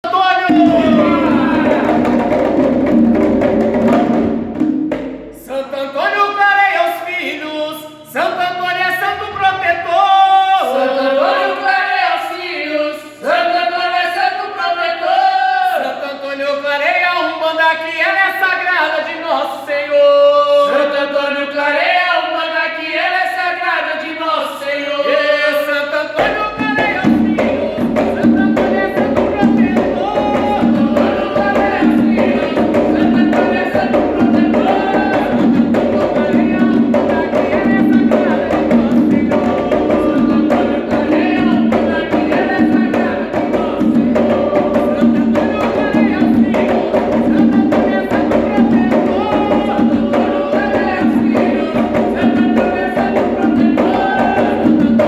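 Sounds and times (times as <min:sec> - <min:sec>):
group singing: 0:00.0 - 0:06.2, 0:08.1 - 0:17.0, 0:17.6 - 0:55.0
hand drums: 0:00.5 - 0:05.5, 0:26.2 - 0:55.0.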